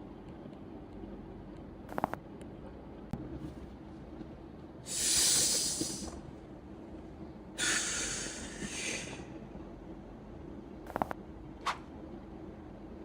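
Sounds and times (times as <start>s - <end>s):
person exhaling hard: 4.9s - 6.1s, 7.6s - 9.2s.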